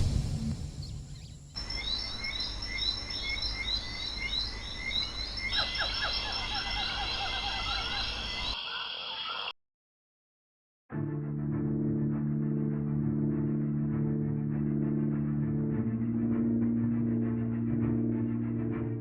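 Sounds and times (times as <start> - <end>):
low rumble: 0.0 - 1.9
background hiss: 0.0 - 5.0
high chirping animal calls: 0.8 - 9.5.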